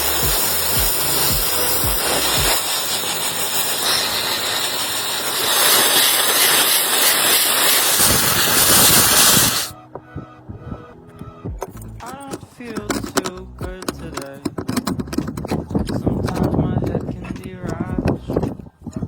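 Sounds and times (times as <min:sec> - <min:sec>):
compressed air spraying hiss: 0:00.0 - 0:09.7.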